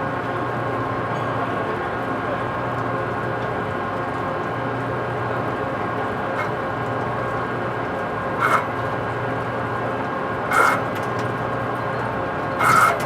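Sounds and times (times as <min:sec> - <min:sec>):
metal lathe running: 0:05.4 - 0:13.0.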